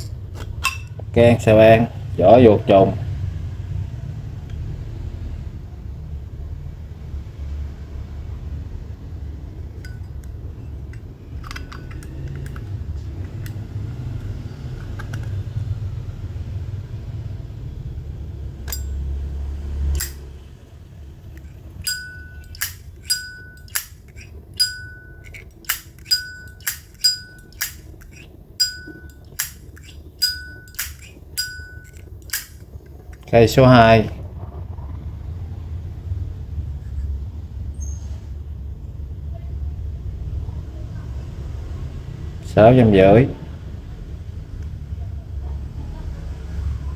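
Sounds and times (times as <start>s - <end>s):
lighter lid clicking open and shut: 11.4s - 13.6s, 14.8s - 15.4s, 18.7s - 19.0s, 20.0s - 20.2s, 21.8s - 33.3s
faint handling clicks: 21.4s - 33.3s.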